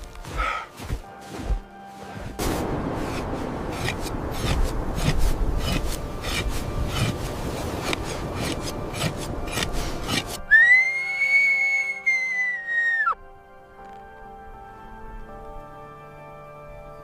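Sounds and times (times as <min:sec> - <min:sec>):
rough rasping strokes: 0:00.1 - 0:10.5
high whistling tone: 0:10.5 - 0:13.2.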